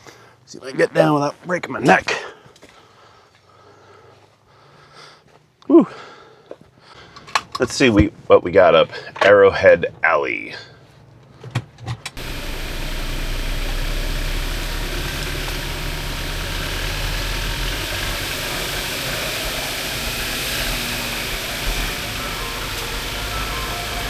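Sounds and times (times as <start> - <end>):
car engine running: 10.9 - 24.0
constant hiss: 11.3 - 24.0.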